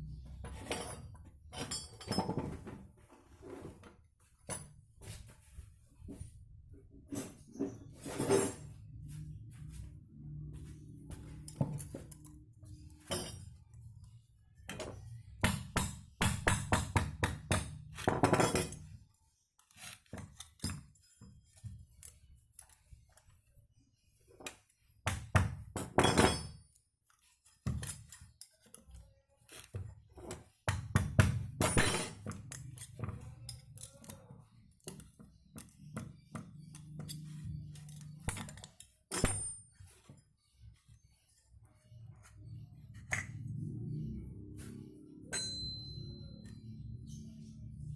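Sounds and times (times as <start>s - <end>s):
metal parts knocking and clinking: 0.4s - 2.8s, 11.1s - 13.7s, 14.7s - 19.0s, 30.2s - 40.2s.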